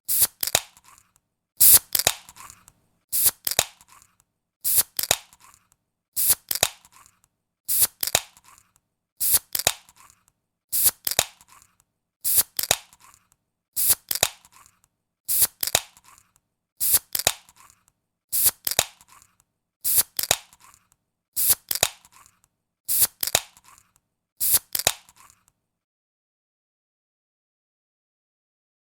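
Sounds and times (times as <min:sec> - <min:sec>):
soda can being opened: 0:00.1 - 0:04.1, 0:04.7 - 0:05.6, 0:06.2 - 0:10.2, 0:10.8 - 0:11.7, 0:12.3 - 0:13.2, 0:13.8 - 0:17.8, 0:18.4 - 0:19.3, 0:19.9 - 0:20.8, 0:21.4 - 0:25.5.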